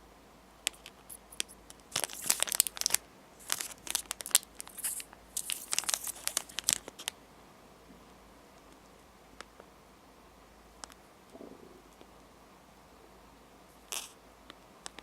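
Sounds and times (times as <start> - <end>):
plastic packaging crinkling: 0.7 - 7.1.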